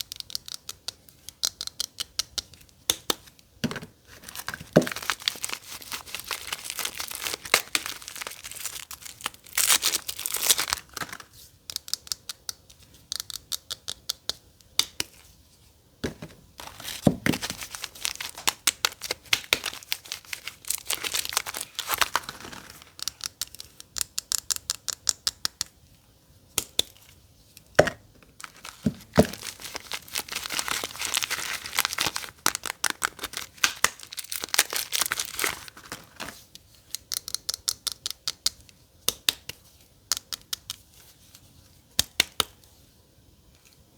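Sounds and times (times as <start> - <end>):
wrapper crinkling and tearing: 4.1 - 11.3, 16.6 - 23.6, 28.4 - 36.4.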